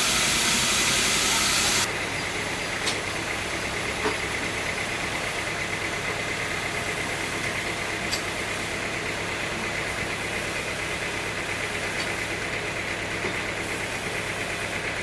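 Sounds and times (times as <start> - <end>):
loud hissing noise: 0.0 - 2.7
motor running with faint whine: 0.0 - 5.3.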